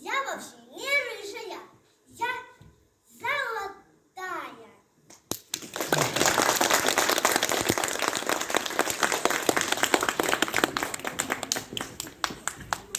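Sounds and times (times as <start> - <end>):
audience applauding: 5.3 - 12.9.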